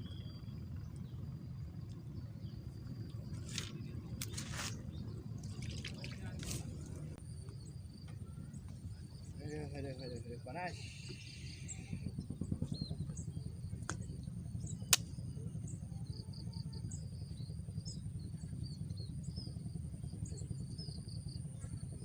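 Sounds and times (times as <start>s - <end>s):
steady low rumble: 0.0s - 22.0s
small birds chirping: 0.1s - 19.6s
sharp click: 14.9s - 15.1s.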